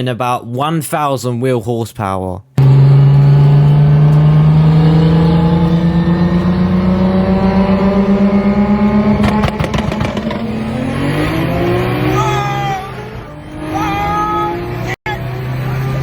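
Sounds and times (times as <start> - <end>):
exhaust pops: 2.6 - 6.8, 7.7 - 10.8
car engine revving through gears: 2.6 - 16.0.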